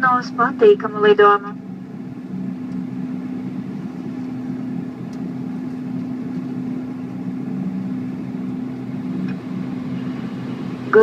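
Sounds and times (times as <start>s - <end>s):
turboprop engines droning: 0.0s - 11.0s.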